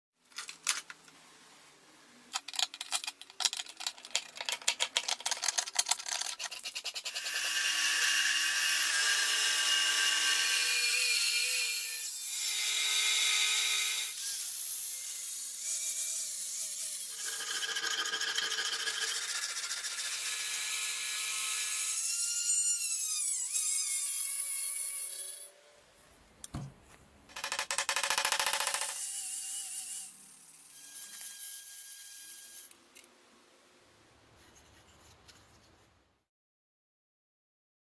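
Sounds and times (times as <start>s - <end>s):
rapid tool clicks and taps: 27.3s - 29.0s.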